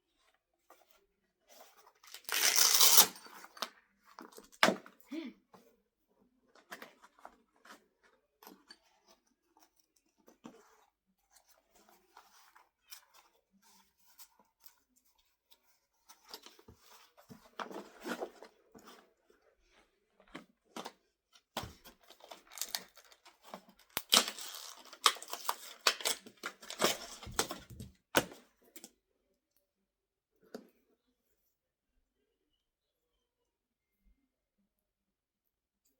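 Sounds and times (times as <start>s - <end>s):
packaging tearing: 2.0s - 3.2s, 22.2s - 23.1s, 23.9s - 27.5s
packaging clicks and rustles: 21.6s - 28.3s.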